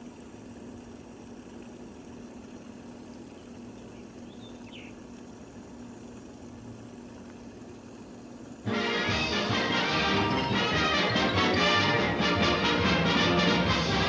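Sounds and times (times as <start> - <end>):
faint bird chirp: 2.9 - 5.2
music: 8.7 - 14.0.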